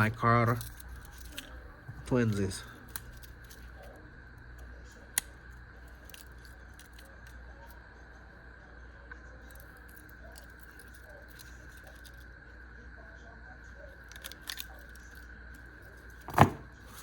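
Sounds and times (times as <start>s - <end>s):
background hum: 0.0s - 17.0s
handling clicks: 16.2s - 17.0s.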